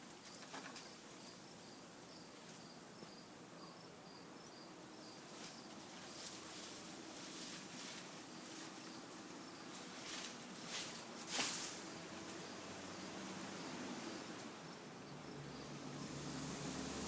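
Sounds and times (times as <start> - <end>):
insects buzzing: 0.0 - 17.0
rustling swishes: 9.8 - 12.0.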